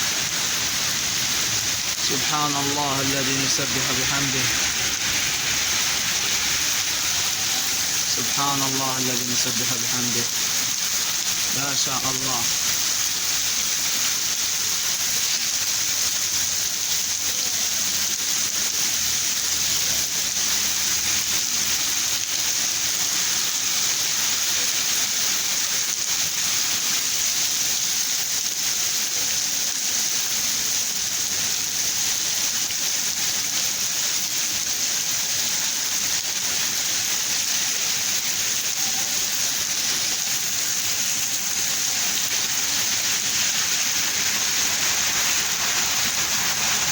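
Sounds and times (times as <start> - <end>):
heavy rain: 0.0 - 46.9.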